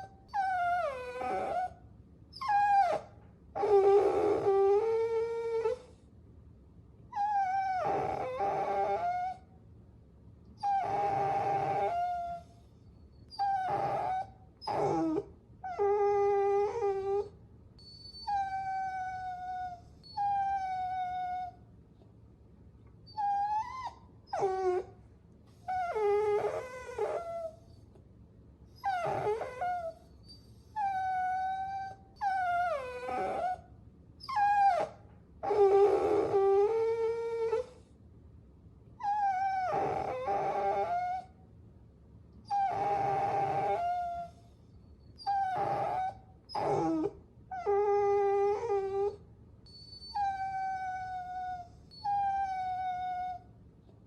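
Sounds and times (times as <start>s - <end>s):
puppies whining: 0.0s - 6.0s, 7.2s - 9.4s, 10.6s - 21.6s, 23.1s - 24.9s, 25.5s - 27.8s, 28.8s - 37.8s, 39.0s - 41.3s, 42.5s - 53.5s
puppies howl-like cries: 28.8s - 30.0s, 30.8s - 33.6s, 45.2s - 49.2s, 50.0s - 53.4s.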